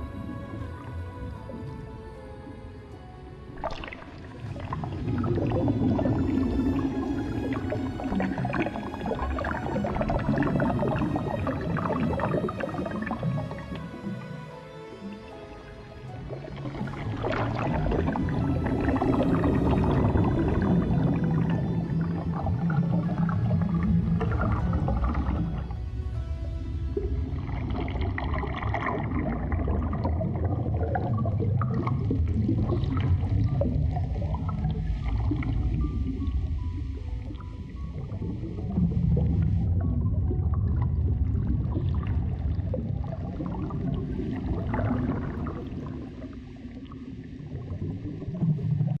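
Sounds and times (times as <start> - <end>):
water bubbling and gurgling: 0.0 - 49.0
steady low rumble: 16.2 - 49.0.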